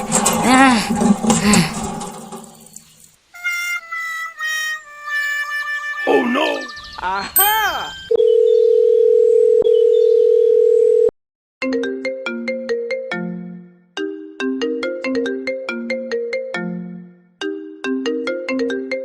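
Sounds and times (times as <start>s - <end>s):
mallet-style ringtone melody: 7.4s - 8.9s, 11.6s - 19.0s.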